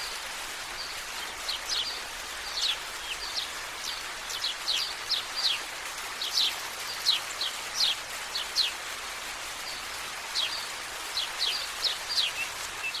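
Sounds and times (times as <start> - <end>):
outdoor ambience hiss: 0.0 - 13.0
songbirds chirping: 0.0 - 13.0.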